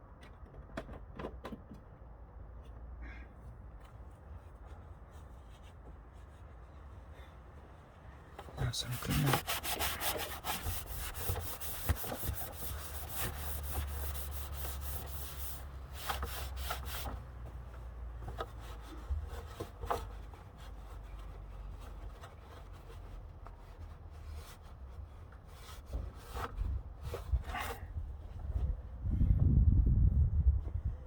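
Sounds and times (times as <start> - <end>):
rubbing and wiping strokes: 8.6 - 17.3.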